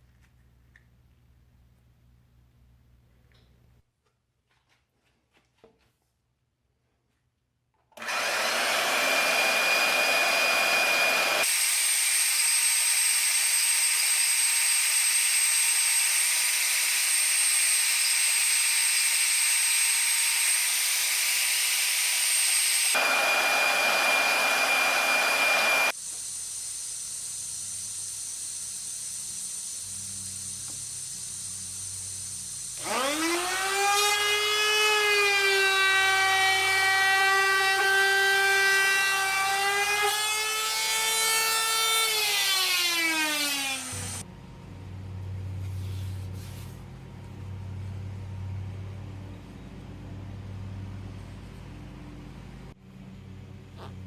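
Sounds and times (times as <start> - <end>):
motor spinning up: 8.0 - 26.0
power tool whirring: 8.0 - 26.0, 28.3 - 44.3.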